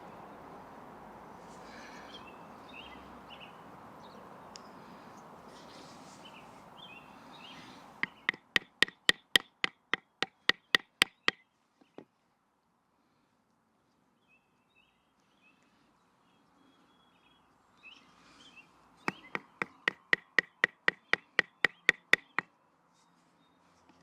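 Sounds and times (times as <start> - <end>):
baton knocking on knife blade: 8.0 - 11.4, 19.1 - 22.4.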